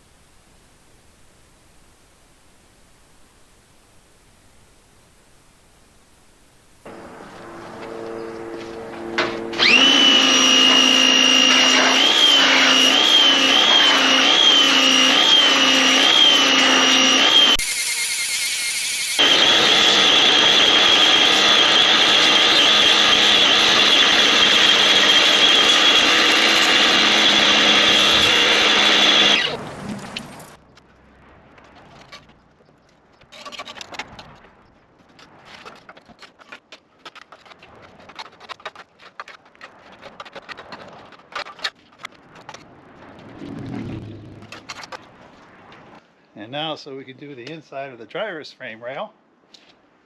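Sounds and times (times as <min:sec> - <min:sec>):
pressure washer whine and spray: 0:06.9 - 0:30.6.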